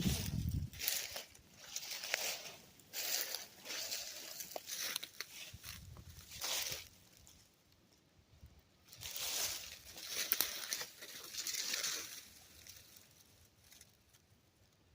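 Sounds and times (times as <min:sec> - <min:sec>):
rustling: 0:00.0 - 0:07.5, 0:08.9 - 0:14.3.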